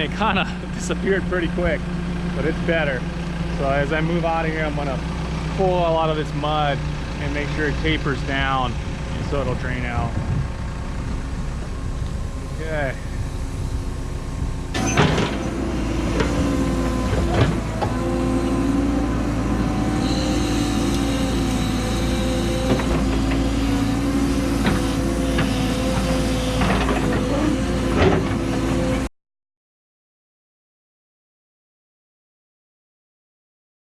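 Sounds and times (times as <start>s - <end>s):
excavator engine and hydraulics: 0.0s - 29.1s
excavator bucket clunks: 14.7s - 18.2s, 24.6s - 28.7s.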